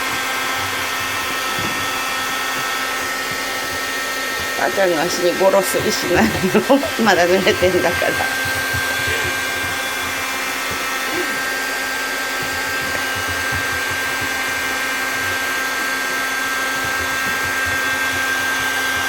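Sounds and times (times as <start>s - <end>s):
hair dryer running: 0.0s - 19.0s.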